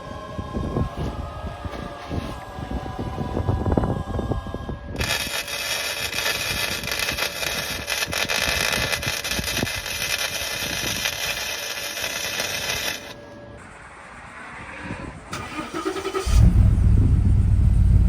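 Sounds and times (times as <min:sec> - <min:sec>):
welding arc sizzling and crackling: 0:05.0 - 0:13.4.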